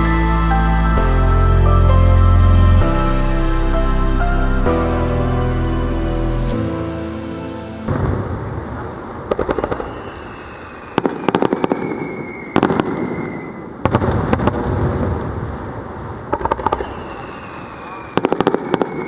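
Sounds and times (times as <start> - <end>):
background music: 0.0 - 8.6
fireworks crackling: 7.0 - 15.6
fireworks booming: 7.9 - 17.4.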